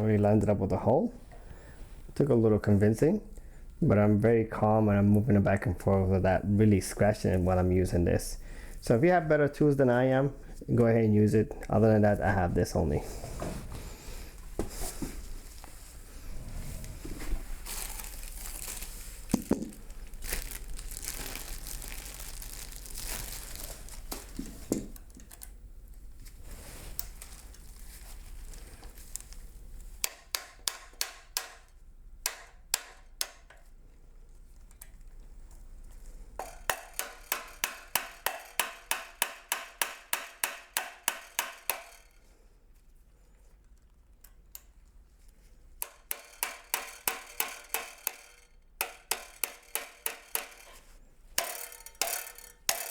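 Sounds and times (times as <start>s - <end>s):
hand tools scraping metal parts: 36.4s - 42.2s, 45.8s - 52.9s.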